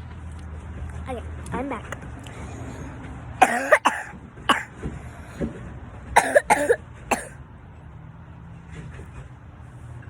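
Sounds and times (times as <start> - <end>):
person coughing: 3.4 - 4.7, 6.2 - 7.4.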